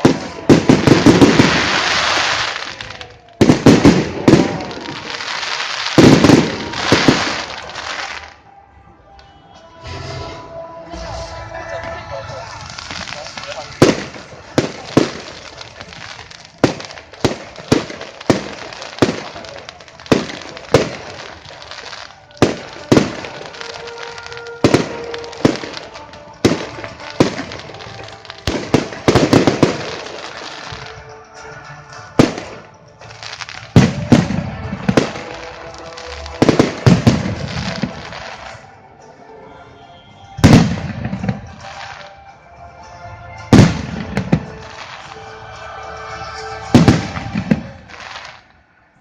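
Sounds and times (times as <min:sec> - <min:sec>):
firework crackling: 0:00.0 - 0:08.5, 0:09.8 - 0:38.8, 0:40.4 - 0:42.2, 0:43.4 - 0:48.8.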